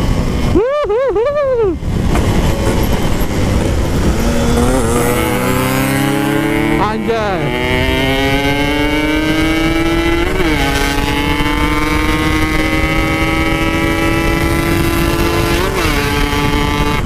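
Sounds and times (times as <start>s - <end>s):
two-stroke engine accelerating: 1.7s - 17.0s.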